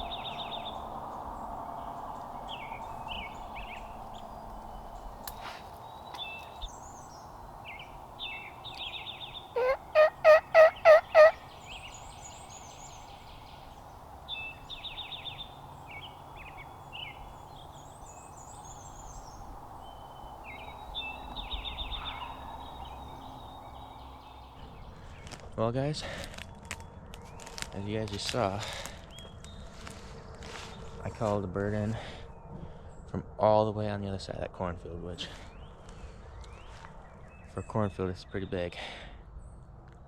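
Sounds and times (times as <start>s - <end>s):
songbirds chirping and singing: 0.0s - 39.9s
turkey call yelps: 6.7s - 17.8s, 18.8s - 24.5s.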